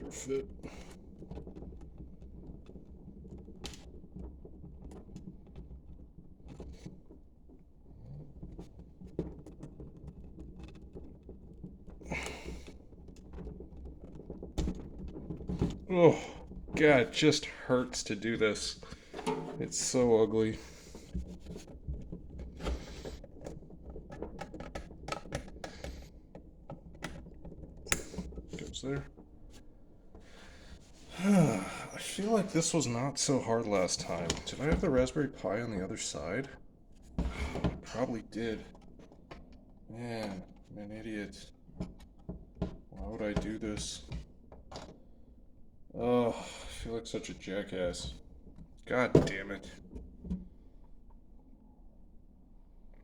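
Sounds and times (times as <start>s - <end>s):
cables and connectors clicking: 0.0s - 30.9s.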